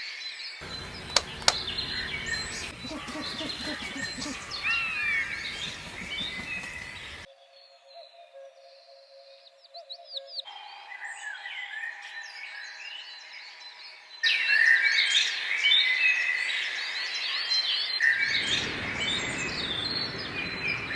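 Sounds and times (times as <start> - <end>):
small birds chirping: 0.6 - 7.3.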